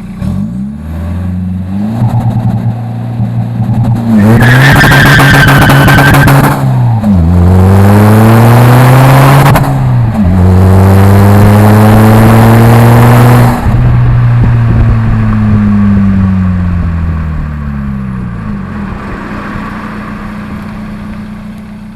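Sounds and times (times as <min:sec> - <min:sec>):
diesel car engine accelerating: 0:00.0 - 0:21.9.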